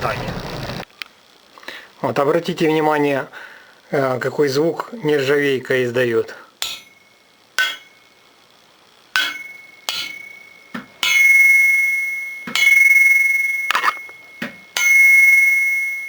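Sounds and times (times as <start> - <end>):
metal exhaust pipe ringing knocks: 6.6 - 8.1, 9.2 - 16.0.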